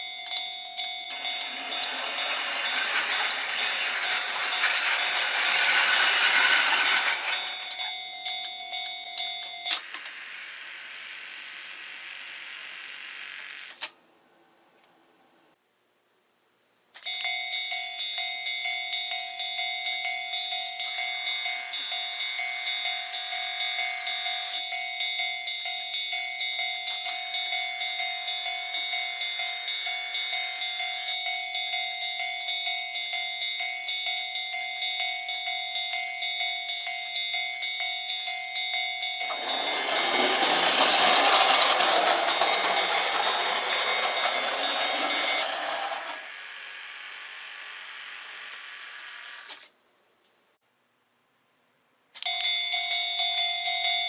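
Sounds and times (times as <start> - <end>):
level crossing bell clanging: 0.0 - 9.8, 17.1 - 46.3, 52.2 - 54.0
model train clattering: 0.2 - 8.4, 39.2 - 46.3
high whine: 17.1 - 46.9.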